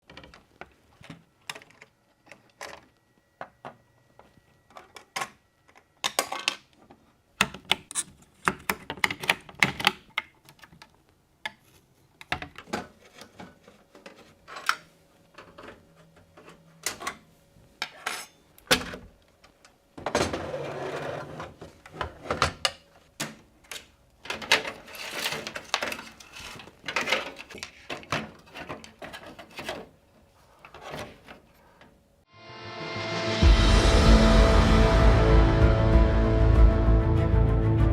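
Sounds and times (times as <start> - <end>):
computer parts clicking and clattering: 4.7 - 11.6.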